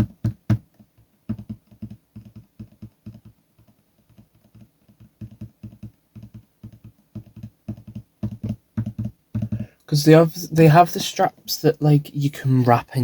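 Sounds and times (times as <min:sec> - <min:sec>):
light taps and clicks: 0:00.0 - 0:09.9.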